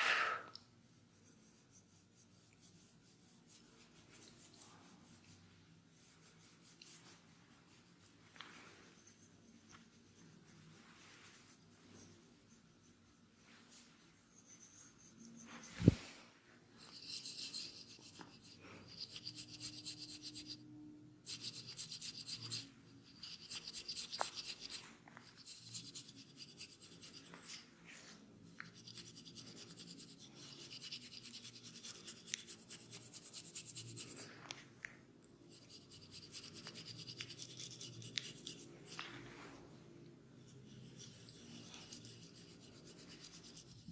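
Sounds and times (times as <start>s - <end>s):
hands rubbing hair and scalp: 0.9s - 16.2s.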